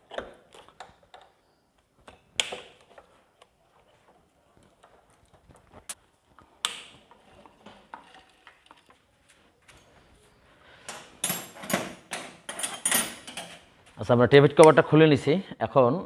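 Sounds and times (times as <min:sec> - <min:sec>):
metal tools clinking and scraping: 0:10.8 - 0:13.7.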